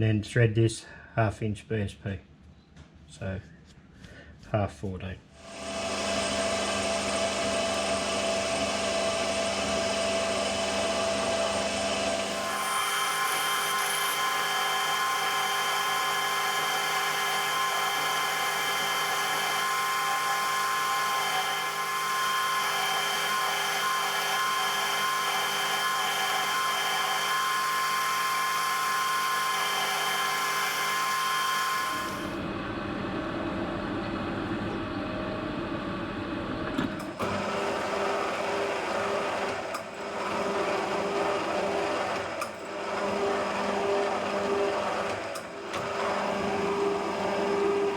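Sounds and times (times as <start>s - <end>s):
metal lathe whining: 5.5s - 32.4s, 37.0s - 47.9s.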